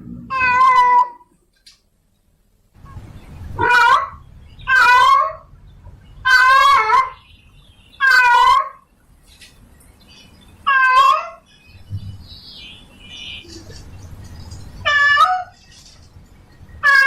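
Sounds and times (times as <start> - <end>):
cat meowing loudly: 0.3 - 1.2, 3.6 - 4.1, 4.7 - 5.4, 8.0 - 8.8, 10.7 - 11.4, 14.8 - 15.6.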